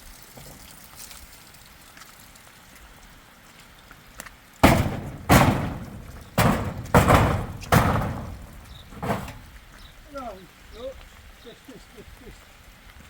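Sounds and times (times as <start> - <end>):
heavy thuds: 4.6 - 9.6.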